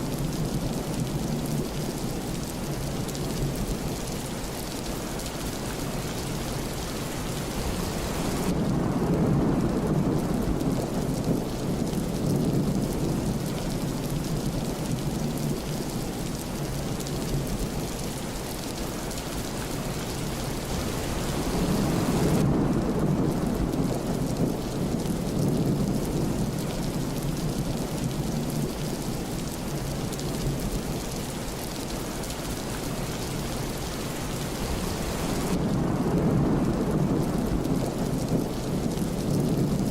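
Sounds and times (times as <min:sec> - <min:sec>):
steady rain falling: 0:00.0 - 0:39.9
thunder rolling: 0:34.4 - 0:39.9.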